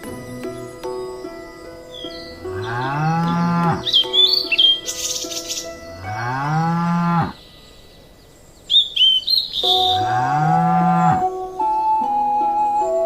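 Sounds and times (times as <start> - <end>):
cow mooing: 2.4 - 3.9, 5.9 - 7.4, 9.7 - 11.3.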